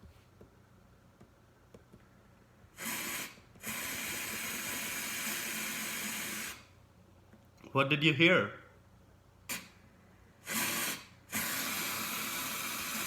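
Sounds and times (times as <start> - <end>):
aerosol spray can spraying: 2.8 - 6.6, 10.4 - 13.0.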